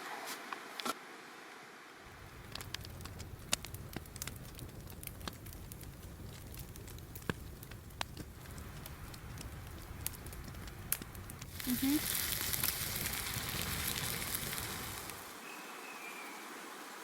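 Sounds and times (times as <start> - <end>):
campfire crackling: 2.0 - 15.4.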